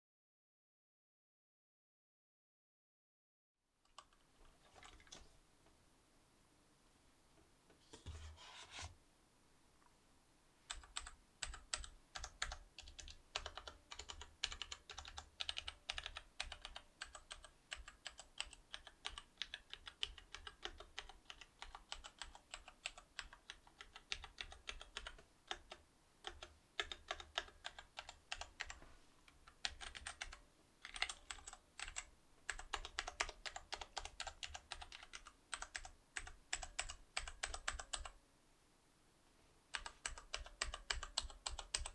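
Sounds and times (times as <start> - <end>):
typing on mechanical keyboard: 3.9 - 5.2, 10.7 - 28.8, 29.4 - 38.2, 39.7 - 41.9.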